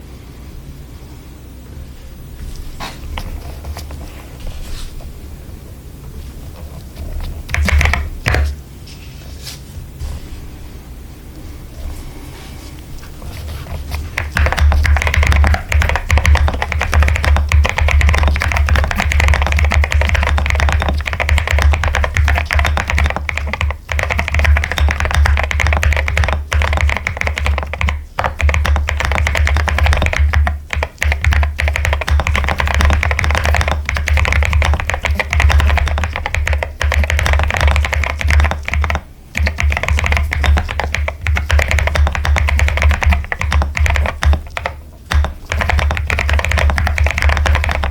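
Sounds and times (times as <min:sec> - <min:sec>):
fast mechanical keyboard typing: 0:07.0 - 0:08.5, 0:13.3 - 0:47.9.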